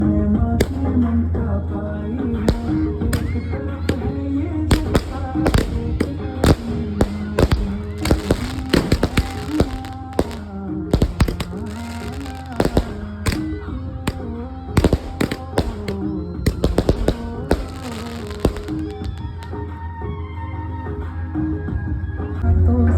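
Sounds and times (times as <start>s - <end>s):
background music with melody: 0.0s - 22.9s
firework bangs: 0.6s - 1.3s, 2.4s - 19.6s.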